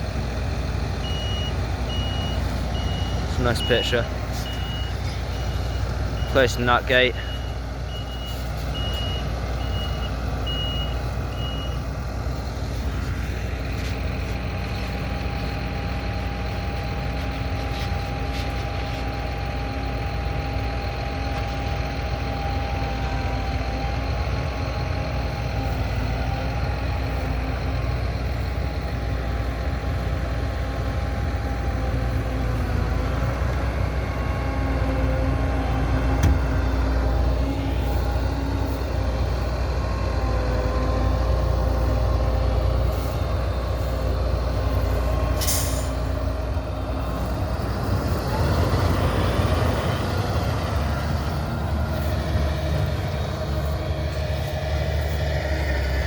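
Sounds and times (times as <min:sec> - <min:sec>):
heavy vehicle engine running: 0:00.0 - 0:56.0
reversing alarm beeps: 0:01.0 - 0:11.9.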